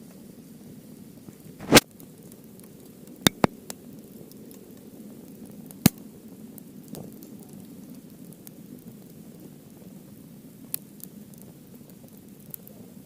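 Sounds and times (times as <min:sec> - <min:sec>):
wood fire crackles and pops: 0:01.1 - 0:13.0
fire flame rush: 0:01.6 - 0:01.8.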